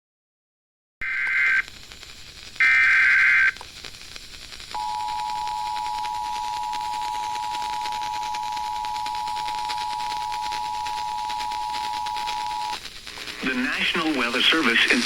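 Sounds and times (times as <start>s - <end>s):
warbling data header bursts: 4.7s - 15.0s
two-tone attention signal: 4.8s - 12.8s.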